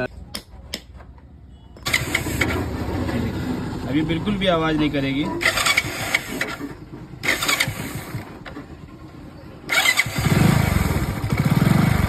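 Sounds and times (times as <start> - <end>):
motorcycle electric starter: 1.8 - 9.0, 9.7 - 12.0
motorcycle engine running: 1.8 - 12.0.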